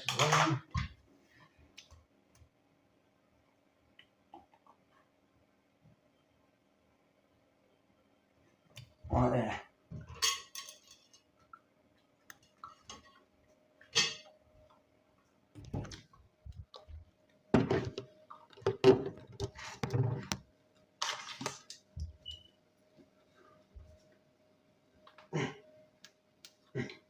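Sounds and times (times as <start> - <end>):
faint steady hum: 0.0 - 27.0
dishes and cutlery clattering: 10.0 - 11.2, 13.9 - 14.3.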